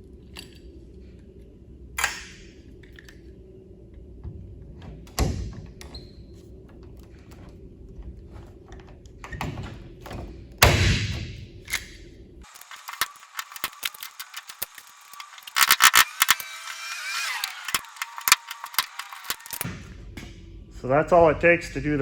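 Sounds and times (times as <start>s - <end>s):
rivet tool clicks: 11.6s - 16.6s.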